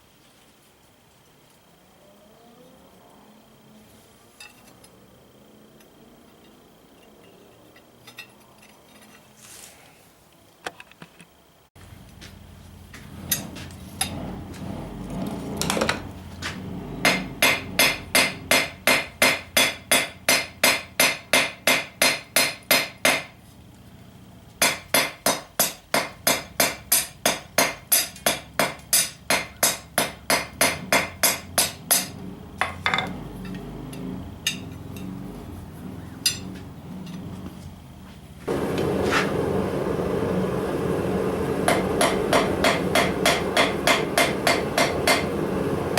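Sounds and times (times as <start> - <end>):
hammer striking steel on anvil: 17.0 - 23.4, 24.6 - 33.6, 41.7 - 45.4.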